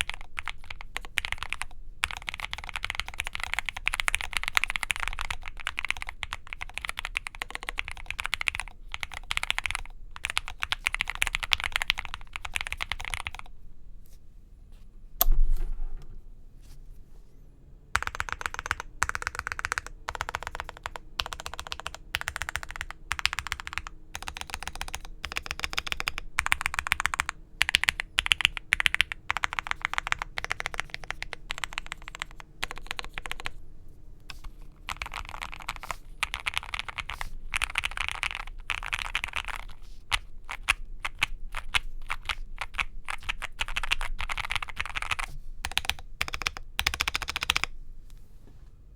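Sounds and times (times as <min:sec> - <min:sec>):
typing on mechanical keyboard: 0:00.0 - 0:13.5, 0:18.0 - 0:33.6, 0:34.4 - 0:47.7
loud low thump: 0:15.2 - 0:16.6.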